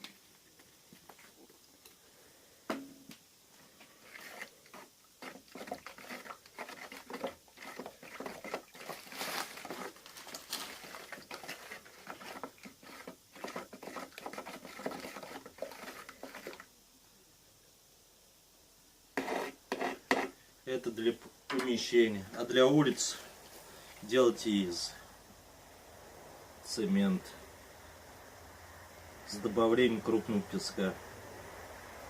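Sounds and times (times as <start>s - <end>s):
spatula stirring wet plaster: 3.8s - 16.7s, 19.2s - 20.4s.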